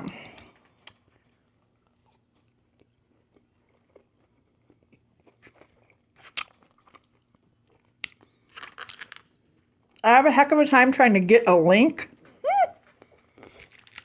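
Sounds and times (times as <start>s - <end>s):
chewing with faint crunches: 0.0s - 10.0s, 12.9s - 14.0s.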